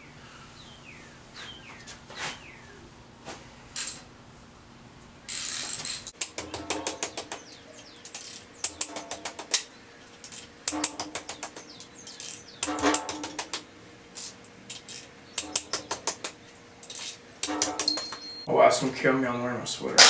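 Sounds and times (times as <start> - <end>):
ratchet wrench clicking: 6.2 - 18.5.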